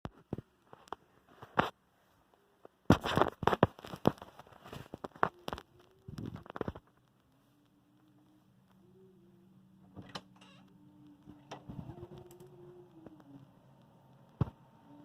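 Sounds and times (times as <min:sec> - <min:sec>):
boy making clicks and pops: 0:02.6 - 0:09.2, 0:10.6 - 0:13.5.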